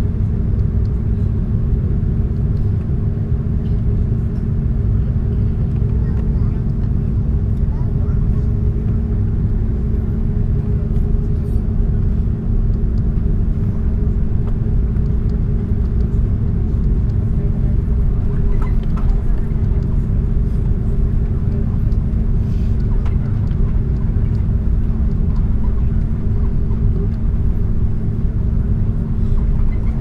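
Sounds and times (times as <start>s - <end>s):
aircraft cabin engine rumble: 0.0s - 30.0s
constant hum: 0.0s - 30.0s.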